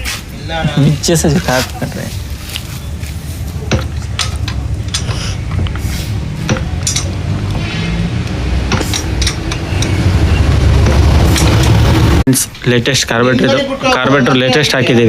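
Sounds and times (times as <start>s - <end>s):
metal tools clinking: 2.4s - 5.9s, 6.5s - 7.2s, 8.7s - 10.0s.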